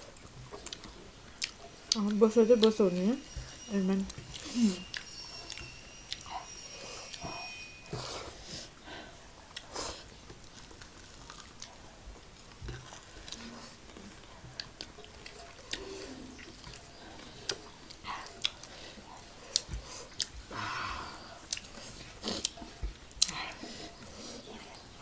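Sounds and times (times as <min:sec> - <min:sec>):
people chewing fried chicken: 0:00.0 - 0:25.0.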